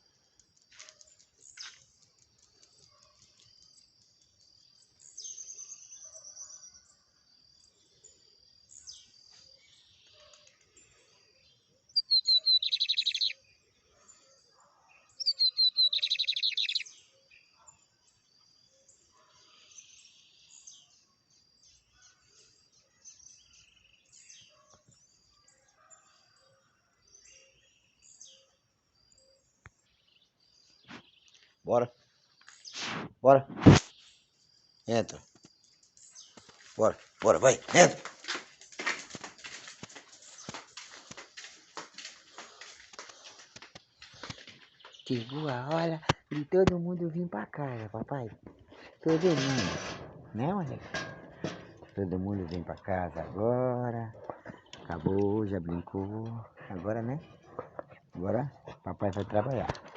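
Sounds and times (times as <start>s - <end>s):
songbirds chirping: 0.0s - 59.9s
bird whistle and buzzy trill: 12.0s - 13.4s, 15.2s - 17.0s.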